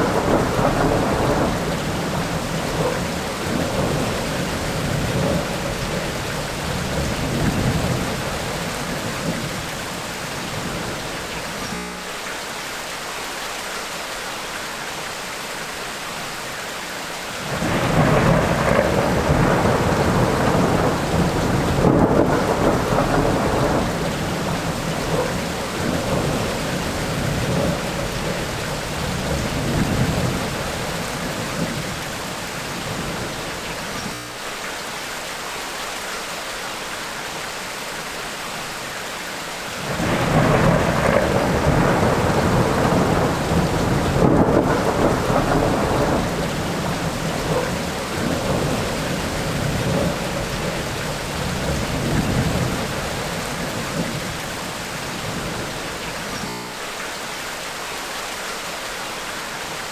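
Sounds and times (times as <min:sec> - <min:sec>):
rolling thunder: 0:00.0 - 0:11.7, 0:17.4 - 0:34.2, 0:39.8 - 0:56.5
steady rain: 0:00.0 - 0:59.9.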